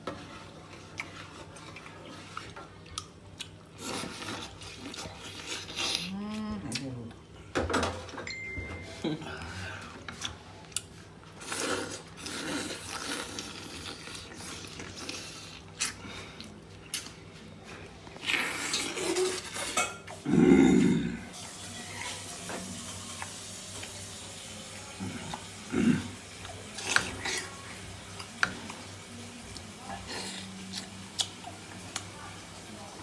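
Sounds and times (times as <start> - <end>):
pots and dishes clattering: 7.5 - 8.9, 19.6 - 20.2.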